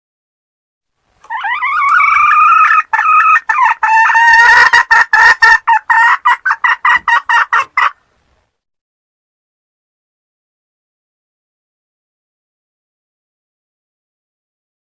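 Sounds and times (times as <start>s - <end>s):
junglefowl hen cackling: 1.2s - 8.0s.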